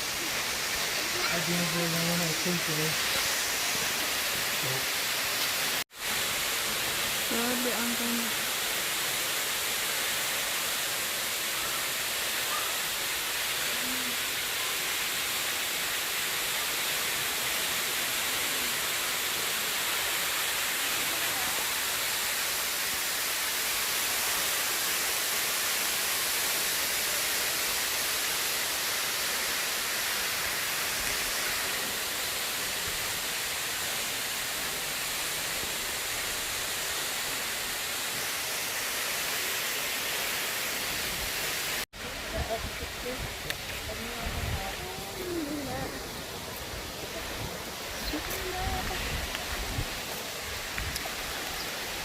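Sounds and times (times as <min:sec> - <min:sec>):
waterfall rushing: 0:00.0 - 0:52.0.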